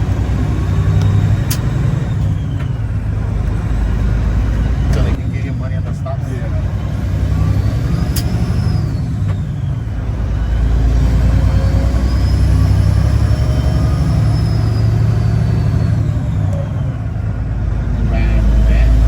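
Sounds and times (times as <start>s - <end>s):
truck diesel engine droning: 0.0s - 19.0s.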